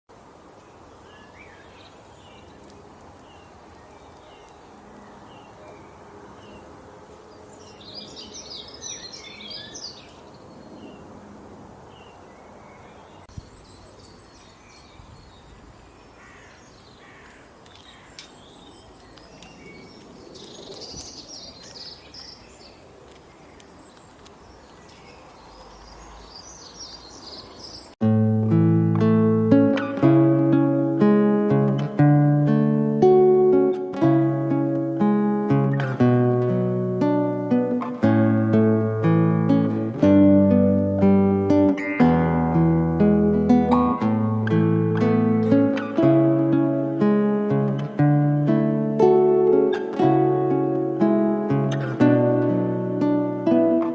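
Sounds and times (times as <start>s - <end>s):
outdoor background hiss: 0.1s - 53.9s
birds chirping: 0.5s - 28.0s, 29.0s - 53.9s
acoustic guitar music: 28.0s - 53.9s.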